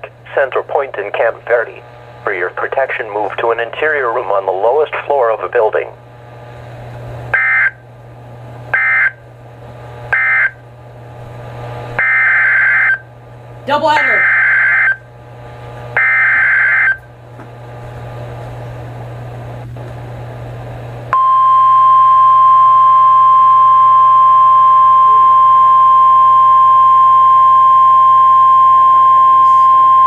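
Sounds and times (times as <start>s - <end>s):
radio hiss: 0.0s - 6.0s
steady alarm tone: 7.3s - 7.8s, 8.7s - 9.2s, 10.1s - 10.6s, 12.0s - 13.1s, 13.9s - 15.1s, 16.0s - 17.1s, 21.2s - 30.0s.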